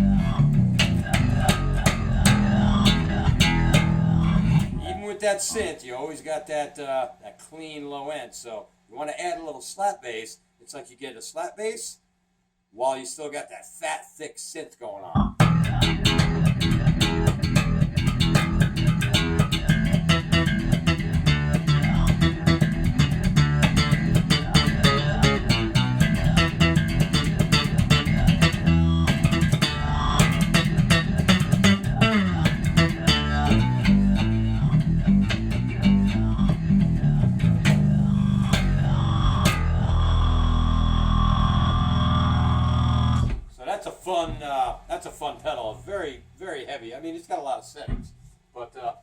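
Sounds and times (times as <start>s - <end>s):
slap bass with fuzz effect: 0.0s - 5.0s, 15.2s - 43.5s.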